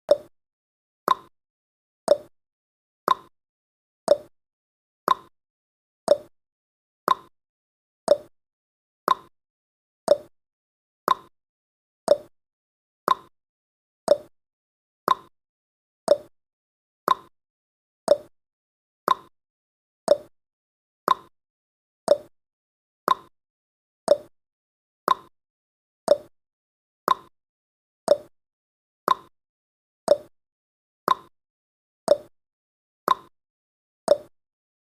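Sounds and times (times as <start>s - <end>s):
timer ticking: 0.1s - 0.3s, 1.1s - 1.3s, 2.1s - 2.3s, 3.1s - 3.3s, 4.1s - 4.3s, 5.1s - 5.3s, 6.1s - 6.3s, 7.1s - 7.3s, 8.1s - 8.3s, 9.1s - 9.3s, 10.1s - 10.3s, 11.1s - 11.3s, 12.1s - 12.3s, 13.1s - 13.3s, 14.1s - 14.3s, 15.1s - 15.3s, 16.1s - 16.3s, 17.1s - 17.3s, 18.1s - 18.3s, 19.1s - 19.3s, 20.1s - 20.3s, 21.1s - 21.3s, 22.1s - 22.3s, 23.1s - 23.3s, 24.1s - 24.3s, 25.1s - 25.3s, 26.1s - 26.3s, 27.1s - 27.3s, 28.1s - 28.3s, 29.1s - 29.3s, 30.1s - 30.3s, 31.1s - 31.3s, 32.1s - 32.3s, 33.1s - 33.3s, 34.1s - 34.3s.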